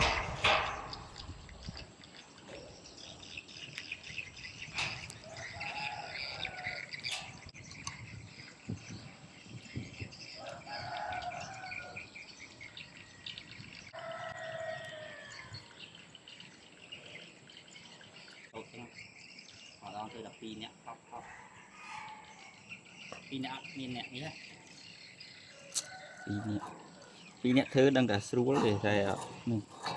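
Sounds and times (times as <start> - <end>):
small birds chirping: 0.0 - 29.9
rooster crowing: 5.2 - 7.0, 10.4 - 12.2, 13.9 - 15.7, 21.2 - 22.6, 25.5 - 27.4.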